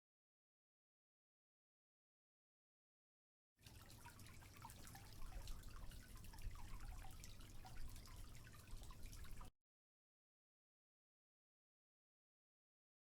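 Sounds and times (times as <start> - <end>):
coffee trickling and dripping: 3.6 - 9.5.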